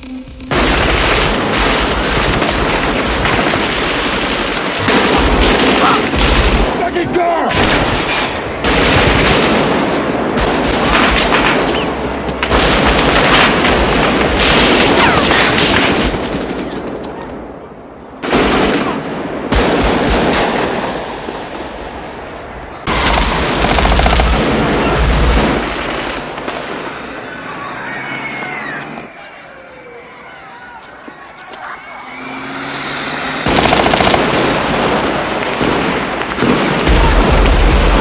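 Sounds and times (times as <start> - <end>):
automatic rifle fire: 0.5 - 6.8, 33.4 - 38.0.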